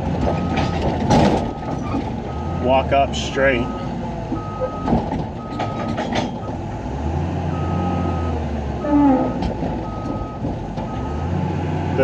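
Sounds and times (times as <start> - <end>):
diesel engine bogging down: 0.0 - 12.0
metal clanks: 0.2 - 2.3, 4.4 - 6.6
travel alarm beeping: 4.4 - 5.9.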